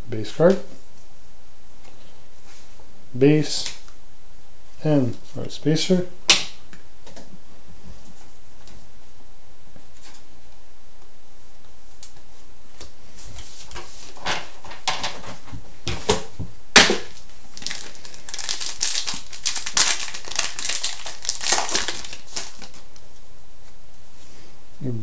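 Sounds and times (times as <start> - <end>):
plastic wrapper crinkling and tearing: 17.1 - 22.8.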